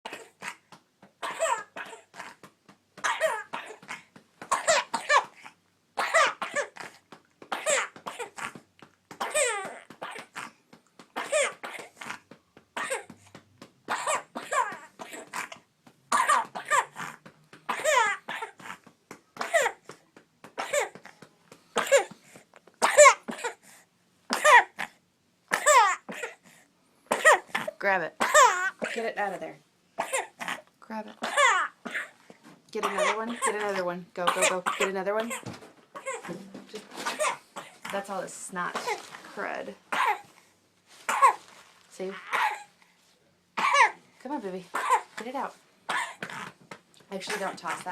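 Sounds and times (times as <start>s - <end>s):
baby coughing: 0.0s - 2.4s, 3.0s - 8.6s, 9.2s - 10.6s, 11.2s - 12.2s, 12.8s - 13.2s, 13.9s - 18.8s, 19.4s - 19.9s, 20.6s - 21.1s, 21.8s - 22.2s, 22.8s - 23.7s, 24.3s - 26.5s, 27.1s - 29.2s, 30.0s - 36.4s, 37.0s - 38.0s, 38.7s - 39.2s, 39.9s - 40.3s, 41.1s - 41.5s, 42.2s - 42.8s, 43.6s - 44.0s, 44.7s - 45.3s, 45.9s - 46.5s.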